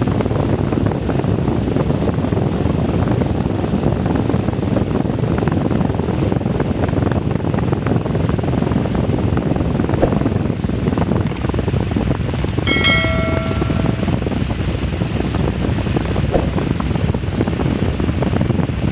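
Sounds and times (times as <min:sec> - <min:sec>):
brief clear tone: 0:12.4 - 0:14.3.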